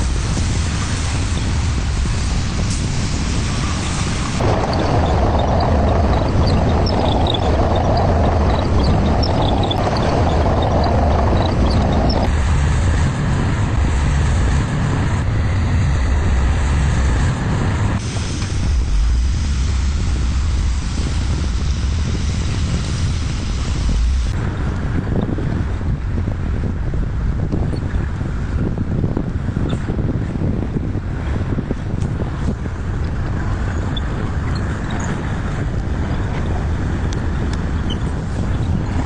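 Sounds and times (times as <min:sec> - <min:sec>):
excavator diesel engine rumbling: 0:00.0 - 0:28.5.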